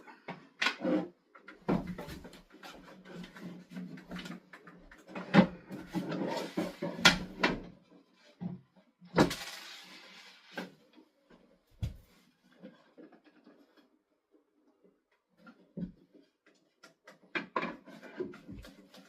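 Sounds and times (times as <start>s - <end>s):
scraping and rustling: 0.7s - 8.4s, 9.2s - 11.0s.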